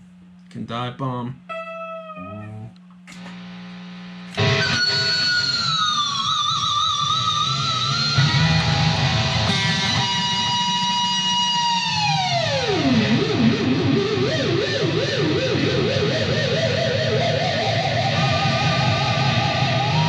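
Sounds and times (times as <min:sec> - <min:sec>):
electric guitar notes with vibrato: 0:04.3 - 0:20.0
guitar whammy bar dive bomb: 0:04.4 - 0:20.0.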